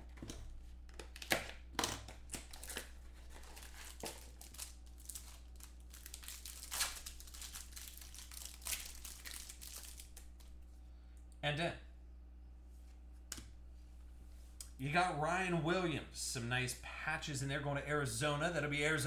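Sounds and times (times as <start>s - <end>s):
cards and packaging crinkling: 0.0s - 10.6s
steady low hum: 0.0s - 19.0s.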